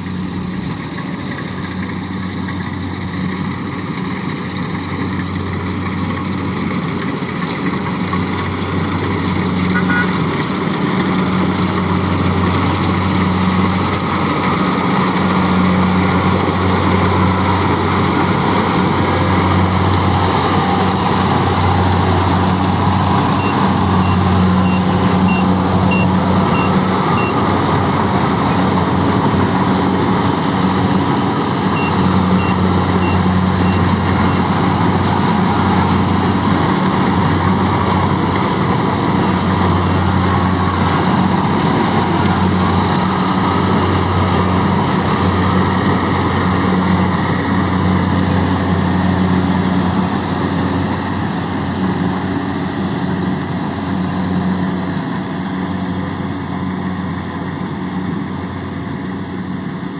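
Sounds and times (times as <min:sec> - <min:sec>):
harvester engine running: 0:00.0 - 0:59.9
reversing alarm beeping: 0:09.7 - 0:10.2, 0:23.4 - 0:27.5, 0:31.7 - 0:34.0.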